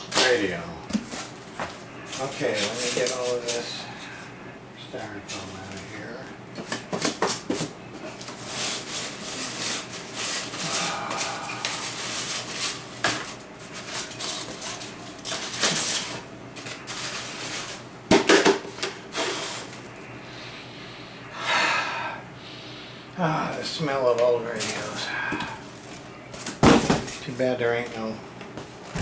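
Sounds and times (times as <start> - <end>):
styrofoam rustling and scraping: 8.1 - 17.8.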